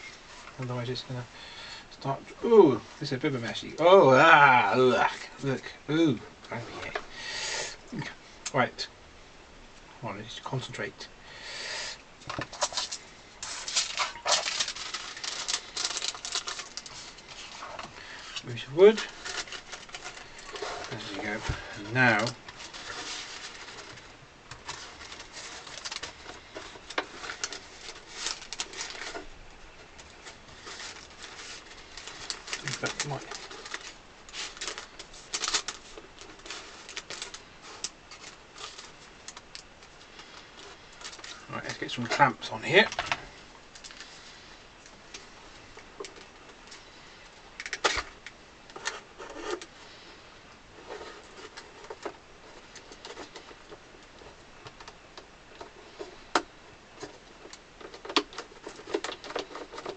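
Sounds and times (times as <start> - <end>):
materials crackling and rustling: 12.2 - 59.9.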